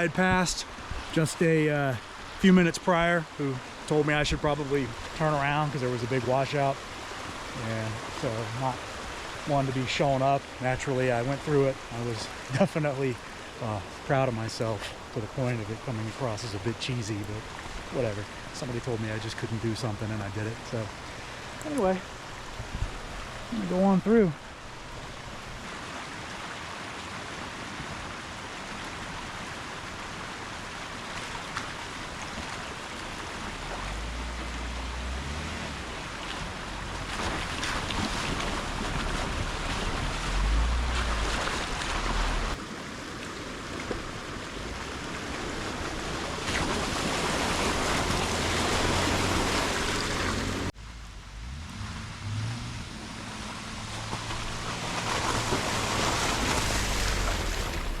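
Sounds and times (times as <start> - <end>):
tyres splashing through water: 0.0 - 26.8, 29.1 - 50.8, 51.4 - 58.0
car engine rumble: 10.6 - 25.7, 33.0 - 42.6, 46.8 - 58.0.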